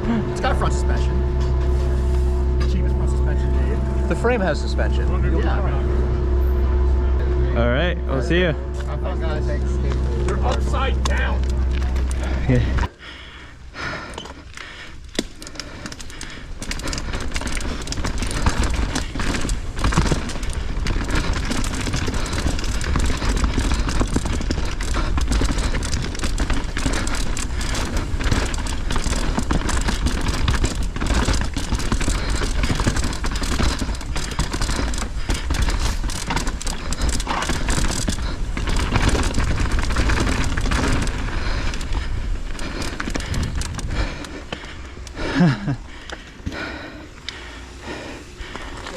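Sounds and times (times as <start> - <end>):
bike clattering and rattling: 0.0 - 48.9
tyre noise on dirt: 10.0 - 48.9.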